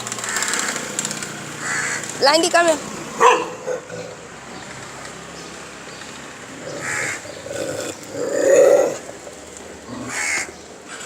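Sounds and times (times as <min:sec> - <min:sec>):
crows cawing: 0:00.2 - 0:01.0, 0:01.6 - 0:02.2, 0:06.8 - 0:07.4, 0:10.0 - 0:10.5.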